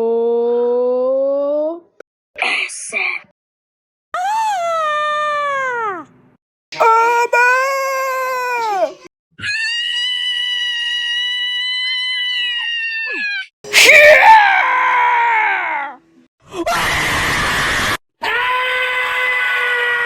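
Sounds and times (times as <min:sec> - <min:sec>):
cartoon screams: 0:07.4 - 0:16.0, 0:16.6 - 0:20.0.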